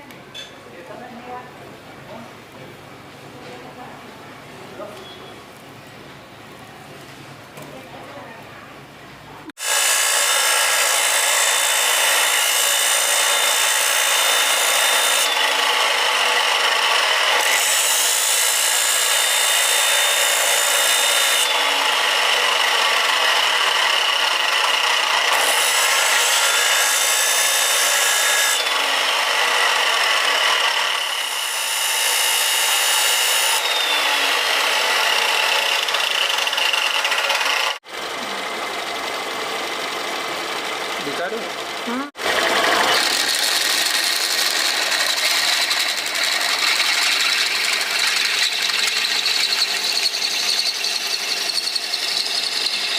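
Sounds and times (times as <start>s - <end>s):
grinder grinding drill bit: 9.6s - 39.8s, 40.8s - 52.9s.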